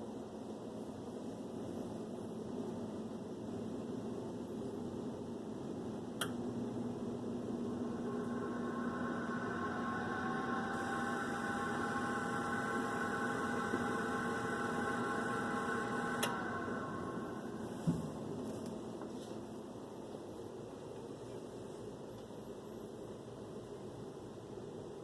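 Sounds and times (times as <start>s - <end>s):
oven fan motor hum: 5.9s - 19.3s.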